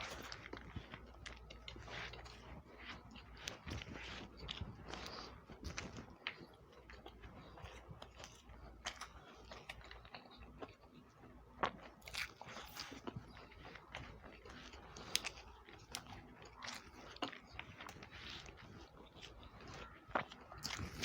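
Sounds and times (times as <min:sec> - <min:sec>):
person chewing food: 0:00.0 - 0:21.0.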